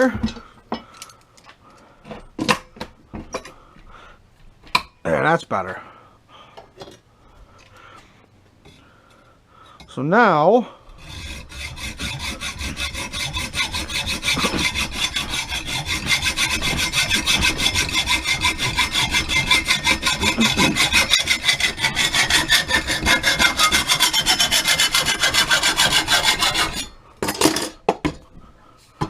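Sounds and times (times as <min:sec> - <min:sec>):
hacksaw cutting metal pipe: 0:10.9 - 0:27.7.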